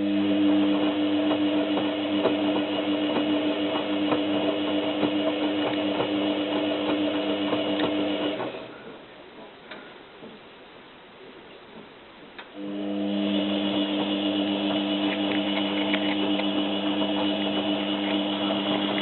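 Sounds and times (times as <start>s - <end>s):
washing machine motor hum: 0.0s - 8.8s, 12.5s - 19.0s
laundry knocking and water sloshing: 1.2s - 8.6s.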